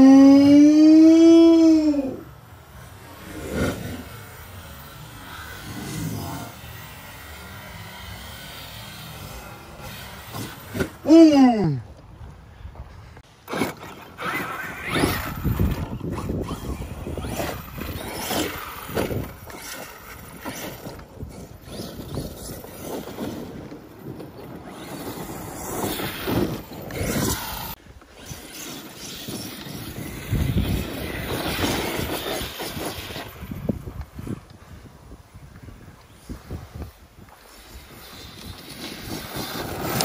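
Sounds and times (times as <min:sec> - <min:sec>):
toy truck motor surging: 0:01.2 - 0:11.1, 0:13.4 - 0:23.6, 0:24.4 - 0:34.4, 0:37.4 - 0:40.0
bumps from landings: 0:02.8 - 0:11.1.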